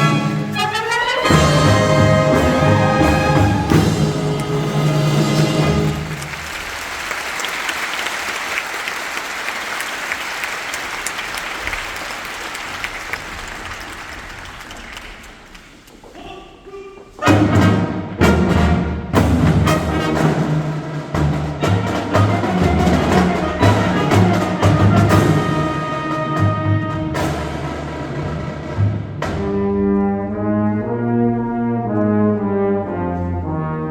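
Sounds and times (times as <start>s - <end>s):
band music: 0.0s - 6.9s, 17.1s - 33.9s
marching band brass and drums: 0.0s - 7.4s, 17.1s - 33.9s
audience applauding: 4.3s - 16.2s.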